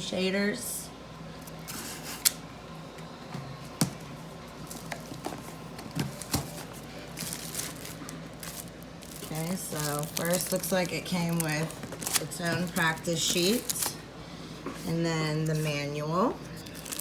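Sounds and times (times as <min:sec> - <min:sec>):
packaging rustling: 0:04.5 - 0:14.1, 0:16.6 - 0:17.0.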